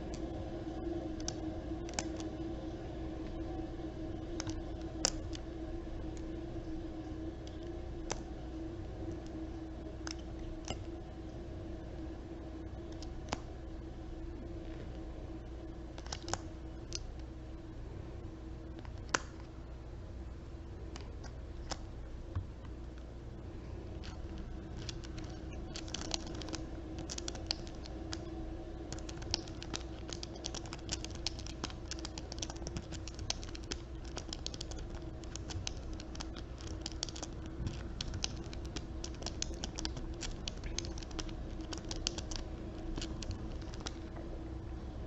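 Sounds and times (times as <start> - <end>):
steady low hum: 0.0 - 45.0
small hard objects clicking: 24.0 - 28.3, 28.9 - 44.0.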